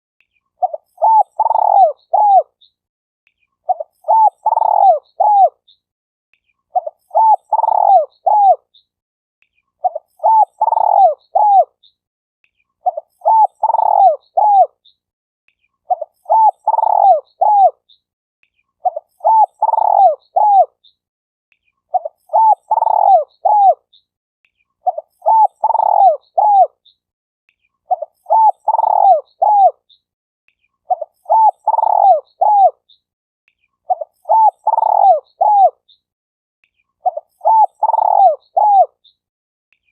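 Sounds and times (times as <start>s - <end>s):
dove cooing: 0.6s - 2.5s, 3.7s - 5.6s, 6.8s - 8.6s, 9.8s - 11.7s, 12.8s - 14.7s, 15.9s - 17.8s, 18.8s - 20.7s, 21.9s - 23.8s, 24.9s - 26.7s, 27.9s - 29.8s, 30.9s - 32.8s, 33.9s - 35.8s, 37.0s - 38.9s.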